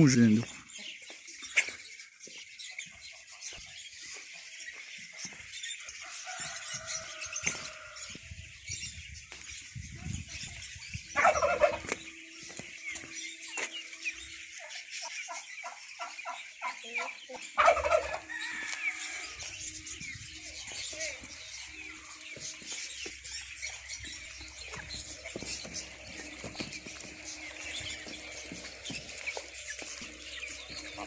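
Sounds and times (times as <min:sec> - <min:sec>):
small cage birds chirping: 0:00.0 - 0:31.0
turkey gobbling: 0:11.1 - 0:12.1, 0:15.0 - 0:19.6.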